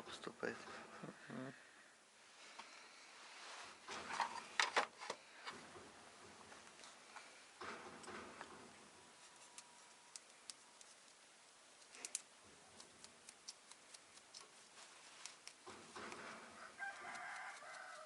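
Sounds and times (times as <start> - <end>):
small parts clicking: 9.3 - 11.2, 11.8 - 14.5.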